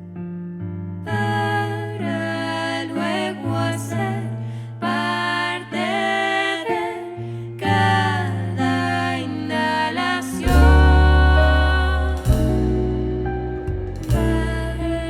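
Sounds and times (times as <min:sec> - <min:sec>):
jazz-pop band music: 0:10.2 - 0:15.0
deep bass note: 0:10.4 - 0:15.0.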